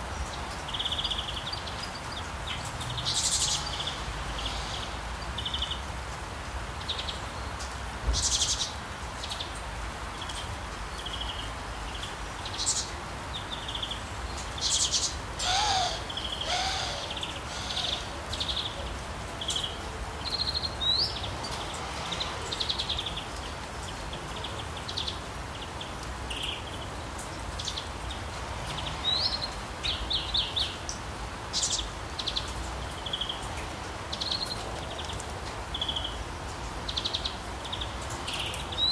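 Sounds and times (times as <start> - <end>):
rain hissing: 0.0 - 38.9
birds chirping: 12.5 - 25.7
low bird call: 15.4 - 18.7.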